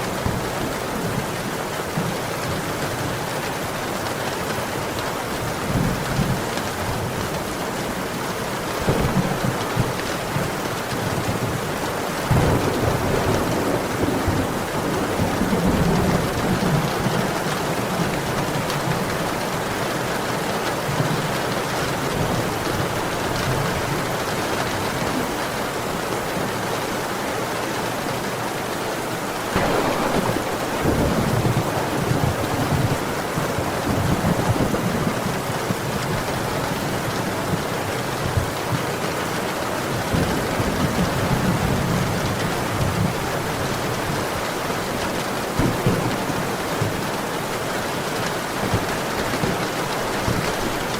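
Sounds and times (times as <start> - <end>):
heavy rain: 0.0 - 50.9
thunder rumbling: 8.8 - 19.3, 29.4 - 36.6.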